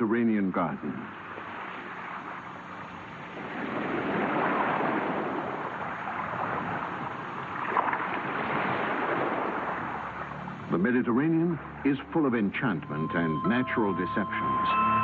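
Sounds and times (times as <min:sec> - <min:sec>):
sea waves washing ashore: 0:00.0 - 0:15.0
water splash: 0:01.1 - 0:11.9.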